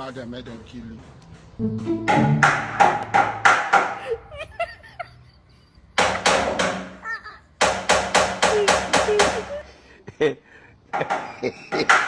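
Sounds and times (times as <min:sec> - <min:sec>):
knocking on a door: 0:02.1 - 0:04.0, 0:07.6 - 0:09.4.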